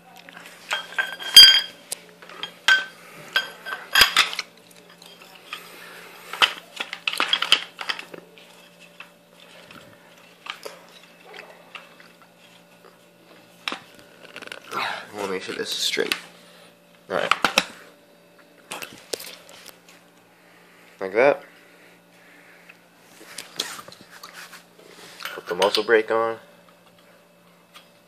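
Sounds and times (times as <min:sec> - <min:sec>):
metal parts clinking and knocking: 0:00.7 - 0:01.7, 0:02.4 - 0:05.6.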